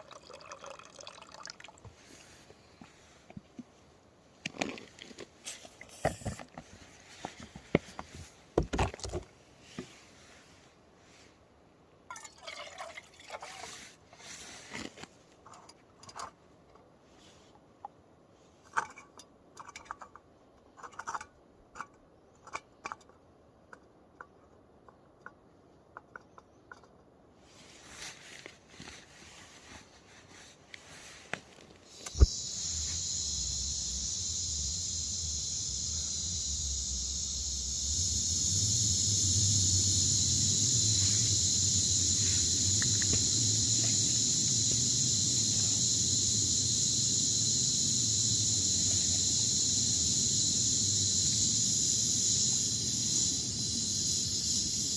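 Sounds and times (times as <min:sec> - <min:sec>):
gas stove burning hiss: 0:31.8 - 0:54.9.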